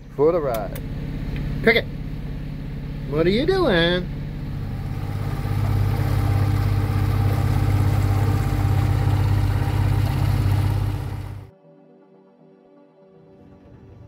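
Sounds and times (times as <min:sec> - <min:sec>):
boat engine droning: 0:00.0 - 0:11.5.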